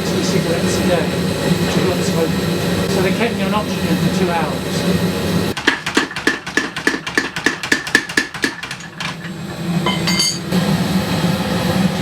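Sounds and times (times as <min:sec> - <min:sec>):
power hammer pounding steel: 0:05.6 - 0:10.6
ringing metal clinks: 0:09.8 - 0:10.5.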